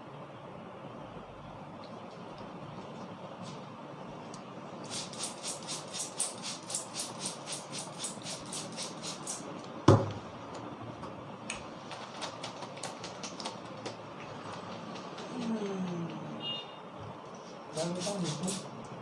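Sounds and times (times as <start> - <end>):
hands slapping in massage: 11.9 - 15.6.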